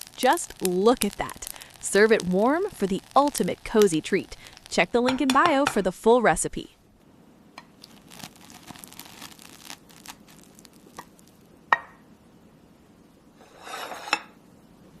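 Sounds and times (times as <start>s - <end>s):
crackly rustling scrape: 7.8s - 11.3s, 13.4s - 14.4s
light scraping: 13.4s - 14.3s.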